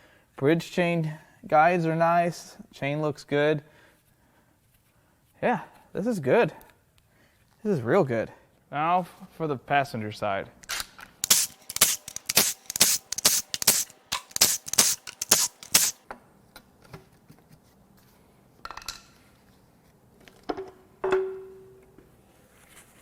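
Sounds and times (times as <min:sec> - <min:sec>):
hand tools clicking and knocking: 0:11.2 - 0:16.0.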